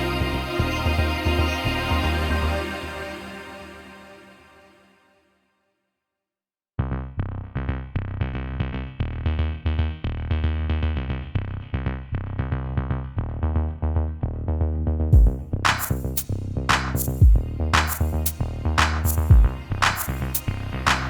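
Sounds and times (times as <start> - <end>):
electronic music with drum-machine beat: 15.2 - 21.0.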